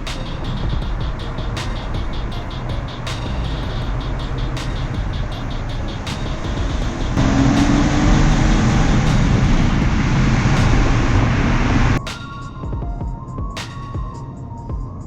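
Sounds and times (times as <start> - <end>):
car engine accelerating: 3.4 - 12.0.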